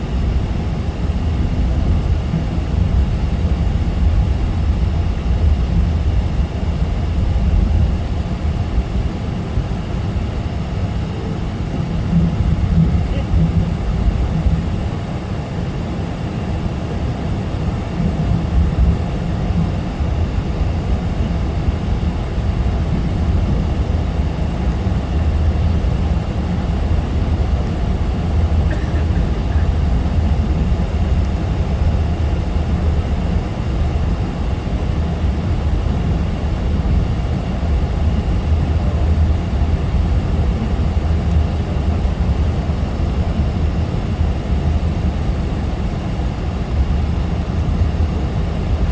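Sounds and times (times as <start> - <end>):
airliner cabin rumble and rushing air: 0.0 - 48.9.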